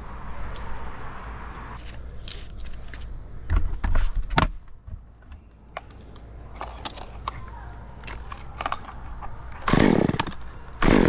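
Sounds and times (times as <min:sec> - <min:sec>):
rubbing and handling noise: 0:01.8 - 0:04.3
metal climbing hardware clinking: 0:05.2 - 0:10.5.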